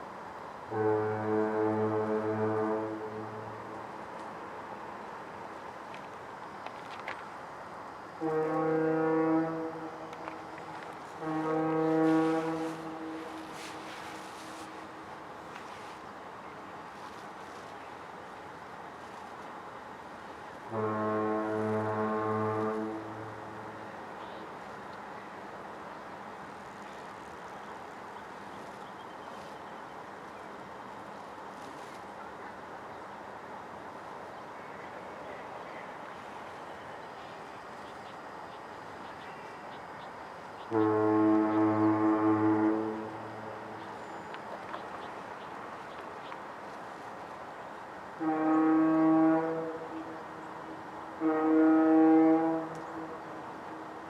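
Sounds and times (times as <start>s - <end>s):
distant traffic roar: 0.0s - 54.0s
deep foghorn blasts: 0.7s - 4.1s, 8.2s - 15.6s, 20.6s - 24.7s, 40.6s - 44.0s, 48.2s - 54.0s.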